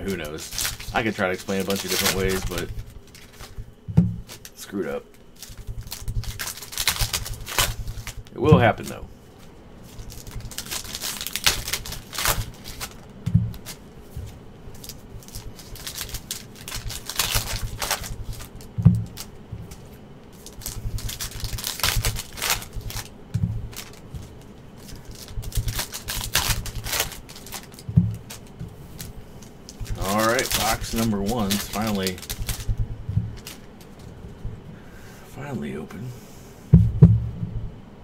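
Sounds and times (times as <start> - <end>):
cardboard clicking and scraping: 0.0 - 8.9, 9.9 - 34.1
low thumps: 2.7 - 4.3, 13.1 - 14.5, 18.2 - 19.9, 22.6 - 24.4, 27.8 - 29.2, 32.2 - 34.8, 36.7 - 38.0.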